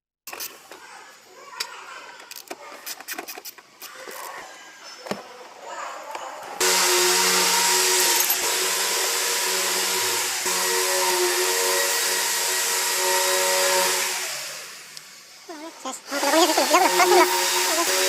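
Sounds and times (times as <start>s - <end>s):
tools clicking and knocking: 1.6s - 4.4s, 8.0s - 8.5s
power tool whirring: 6.6s - 18.0s.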